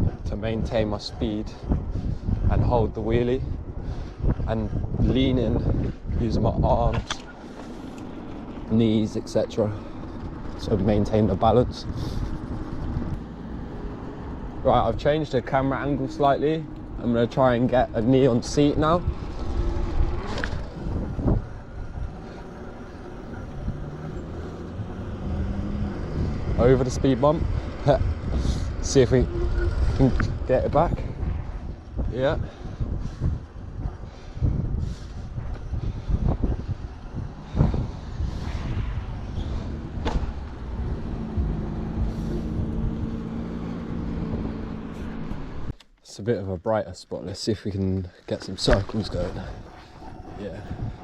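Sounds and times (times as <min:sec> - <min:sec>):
wind noise: 0:00.0 - 0:45.8, 0:47.8 - 0:51.0
road rumble: 0:00.0 - 0:51.0
steady motor hum: 0:07.3 - 0:45.7.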